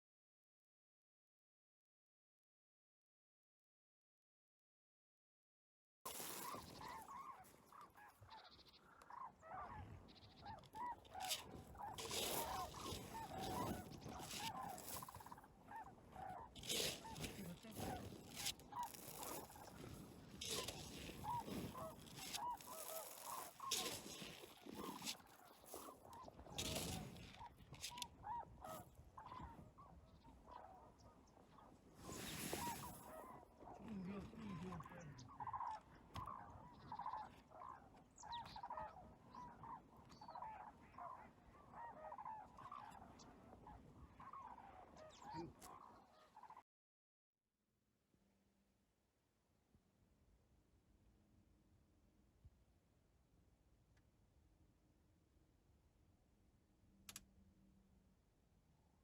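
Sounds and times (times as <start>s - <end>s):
cranes calling: 6.1s - 43.3s
cranes honking calls: 10.7s - 15.3s, 20.6s - 25.1s.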